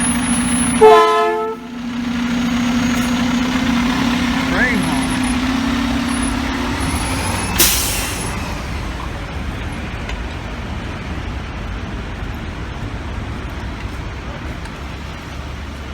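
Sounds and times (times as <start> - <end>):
truck horn tone: 0.0 - 8.4
street traffic: 0.0 - 15.9
truck engine: 0.0 - 15.9
air-brake hiss: 6.3 - 8.9.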